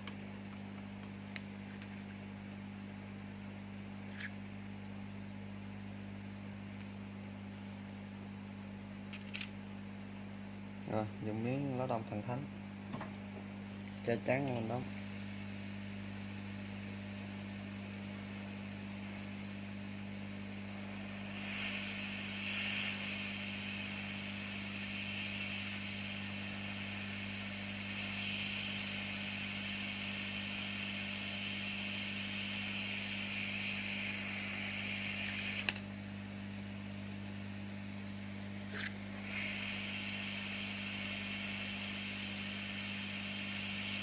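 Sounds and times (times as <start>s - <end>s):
electrical hum: 0.0s - 44.0s
hot air blower hissing: 10.9s - 44.0s.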